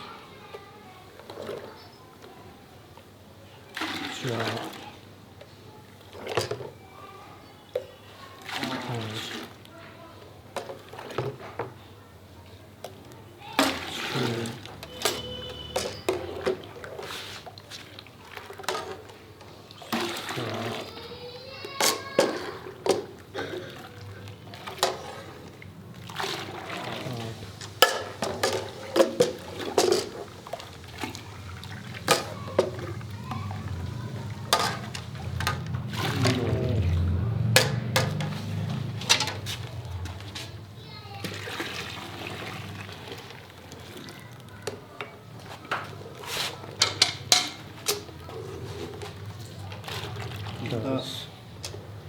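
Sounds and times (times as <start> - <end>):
milk pouring: 3.6 - 11.8, 12.8 - 52.0
containers knocking: 12.8 - 52.0.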